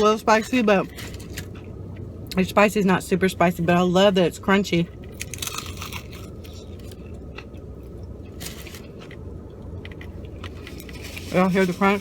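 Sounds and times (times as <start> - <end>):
chewing crunchy fried chicken: 5.0 - 11.3.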